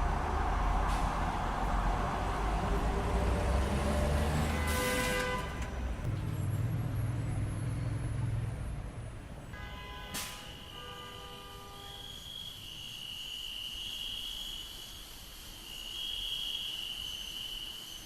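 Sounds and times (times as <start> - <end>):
vehicle engines rumbling past: 0.0 - 9.5
car horn: 4.3 - 5.8, 9.5 - 12.4.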